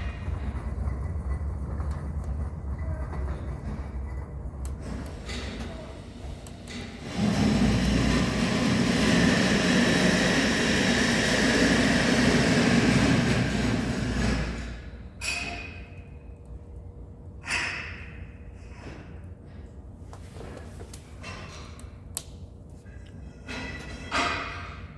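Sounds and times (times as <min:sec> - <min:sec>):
wood stove fire roaring: 0:00.0 - 0:15.0.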